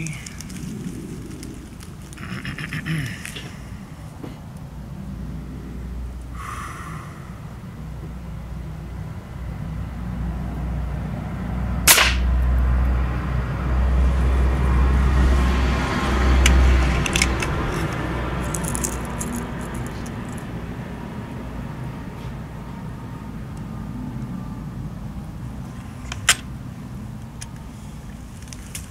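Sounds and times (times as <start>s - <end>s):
low rumble: 3.6s - 21.6s
air rifle shot crack: 11.9s - 12.4s.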